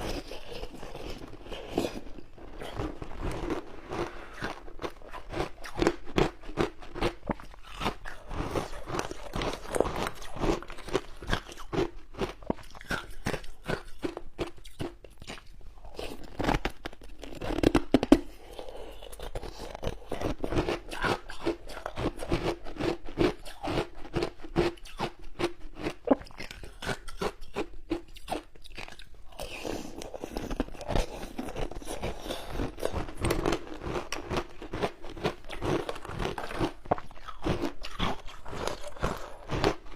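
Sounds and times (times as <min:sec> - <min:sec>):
crunchy chewing of shaved ice: 0:00.0 - 0:39.9.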